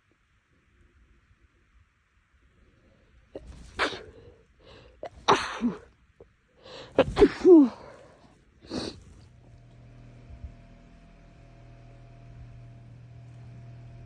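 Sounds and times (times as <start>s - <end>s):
woman sneezing: 3.4s - 4.3s, 5.0s - 5.9s, 6.8s - 9.2s.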